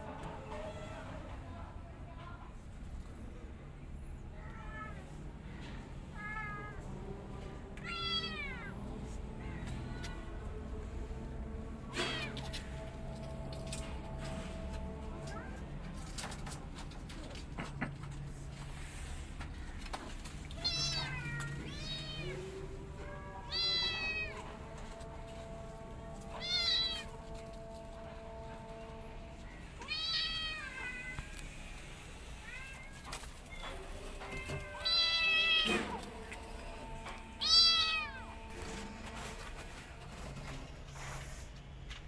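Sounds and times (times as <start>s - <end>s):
kittens meowing: 7.8s - 8.8s, 11.9s - 12.6s, 20.5s - 24.5s, 26.2s - 27.3s, 29.5s - 31.3s, 32.4s - 36.0s, 37.4s - 38.5s.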